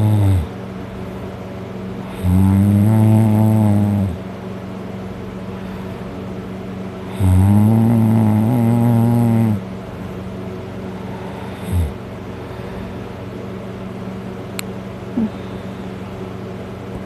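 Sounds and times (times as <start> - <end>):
man snoring: 0.0 - 0.5, 2.0 - 4.2, 7.0 - 9.6, 11.2 - 12.0
steady low hum: 0.0 - 17.0.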